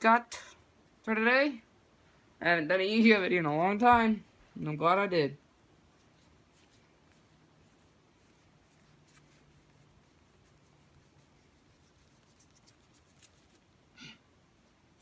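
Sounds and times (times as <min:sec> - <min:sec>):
paper cards rustling: 0:11.7 - 0:13.8.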